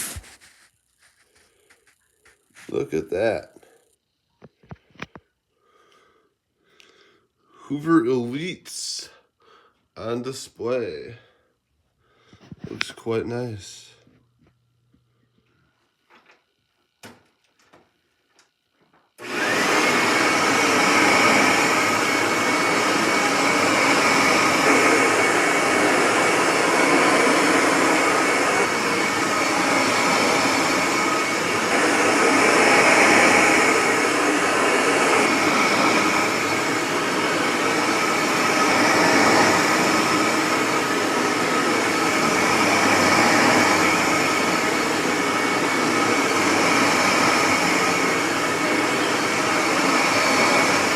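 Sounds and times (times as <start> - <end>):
vacuum cleaner motor running: 0.0 - 5.2, 18.4 - 50.9.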